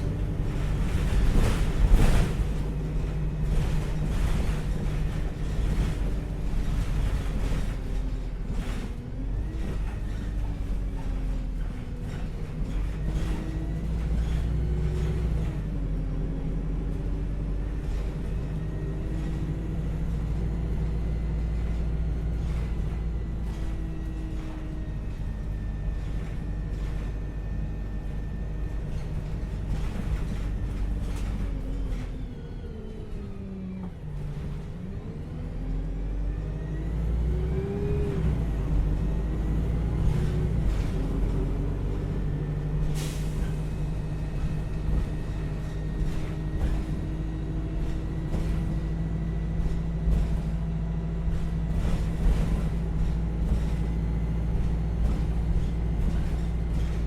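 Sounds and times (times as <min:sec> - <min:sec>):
bus engine rumbling: 0:00.0 - 0:57.0
knocks and rattles: 0:44.3 - 0:57.0.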